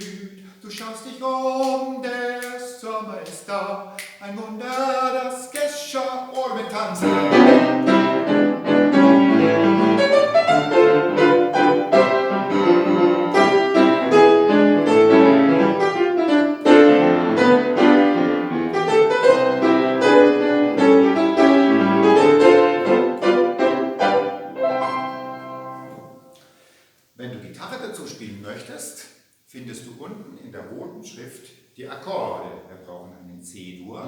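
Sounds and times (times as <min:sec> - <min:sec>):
light piano music: 0:06.3 - 0:26.4.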